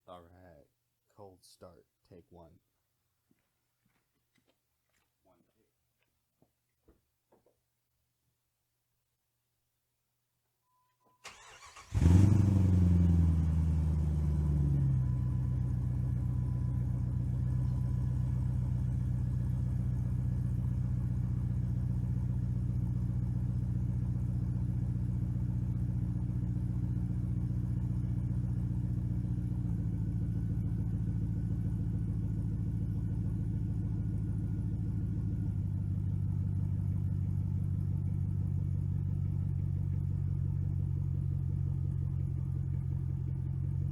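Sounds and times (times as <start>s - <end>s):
engine cranking: 11.2s - 12.5s
car engine revving and idling: 11.4s - 43.9s.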